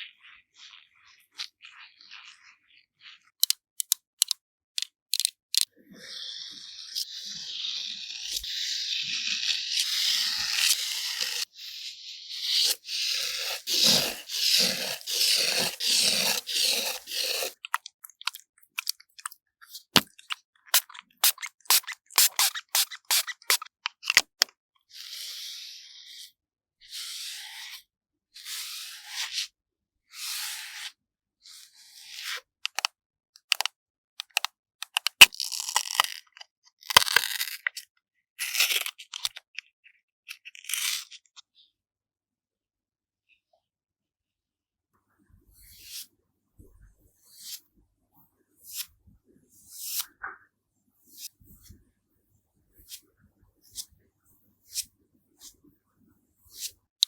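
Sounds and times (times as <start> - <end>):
sharp clicks and taps: 3.4 - 5.7
tools scraping melon rind: 6.6 - 11.5, 12.3 - 24.3.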